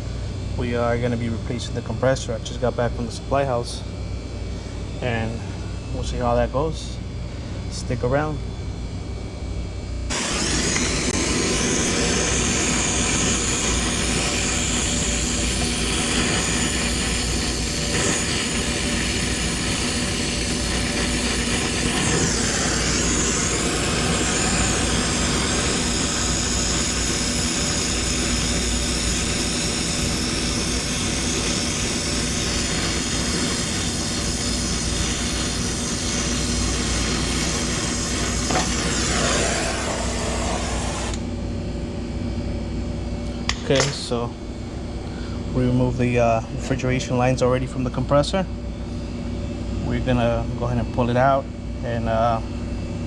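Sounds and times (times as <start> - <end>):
machinery drone: 9.4 - 41.5.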